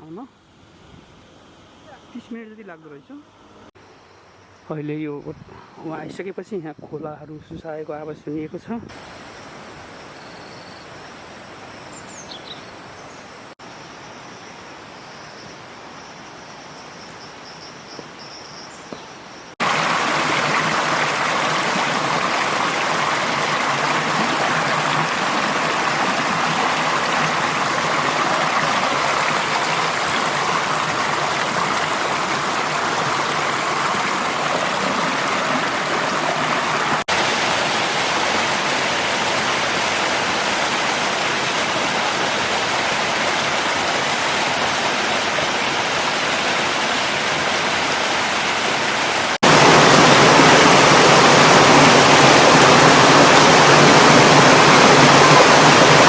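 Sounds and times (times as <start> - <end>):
stream water rushing: 8.9 - 10.5, 19.6 - 56.0.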